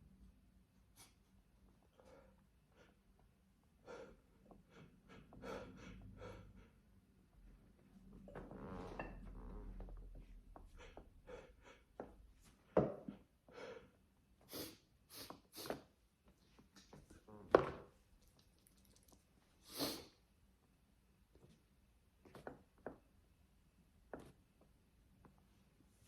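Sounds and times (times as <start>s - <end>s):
person sneezing: 19.7s - 20.2s.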